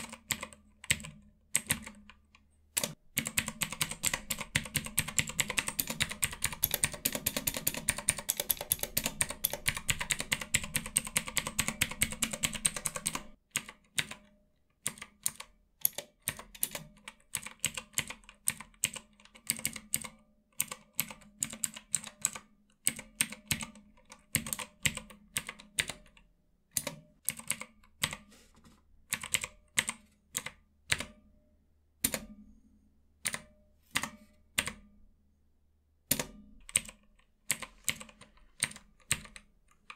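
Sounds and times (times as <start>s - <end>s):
clicky keyboard keystrokes: 0.0s - 14.2s, 36.1s - 39.9s.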